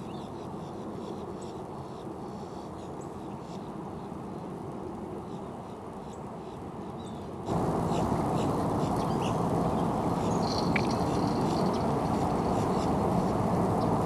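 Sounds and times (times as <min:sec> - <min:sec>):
outdoor background rumble: 0:07.5 - 0:14.0
thin high steady tone: 0:07.5 - 0:14.0
bird chirps: 0:07.9 - 0:13.0.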